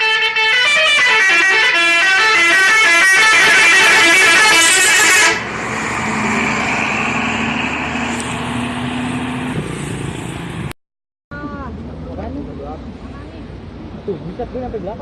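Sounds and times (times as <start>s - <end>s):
multi-tone bus horn melody: 0.0s - 5.6s
vehicle engine and road noise: 0.0s - 15.0s.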